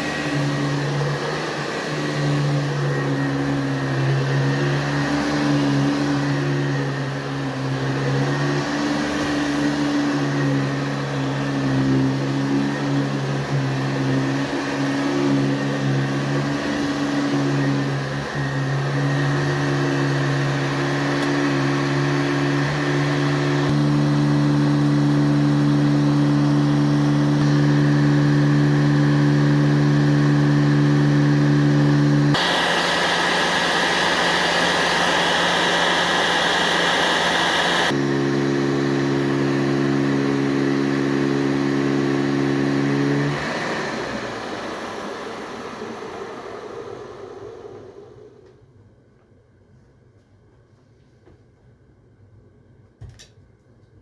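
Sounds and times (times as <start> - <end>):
vacuum cleaner motor humming: 0.0 - 48.5
motor winding down: 28.8 - 38.0
rushing hiss of air: 32.4 - 38.0.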